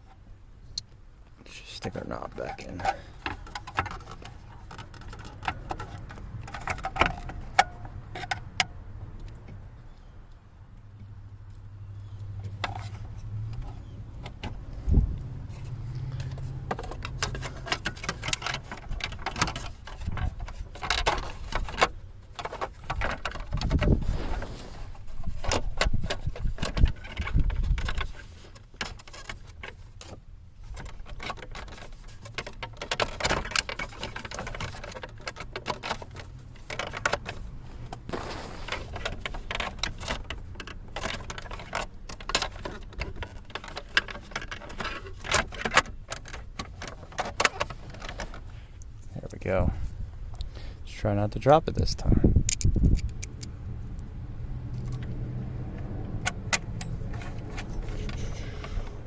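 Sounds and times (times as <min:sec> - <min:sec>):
plastic trim clicks and rattles: 0:52.4 - 0:53.5.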